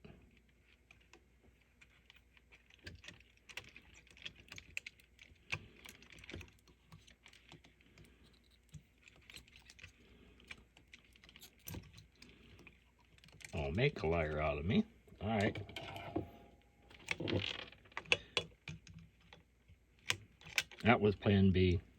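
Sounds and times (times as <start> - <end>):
small hand tools clicking and scraping: 0.3 - 14.2.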